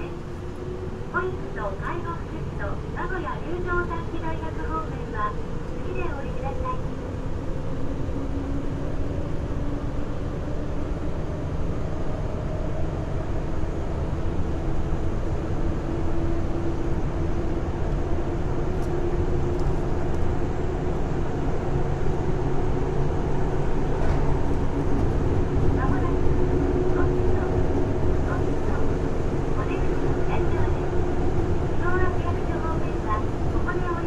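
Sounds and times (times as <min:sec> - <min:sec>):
train running rumble: 0:00.0 - 0:34.0.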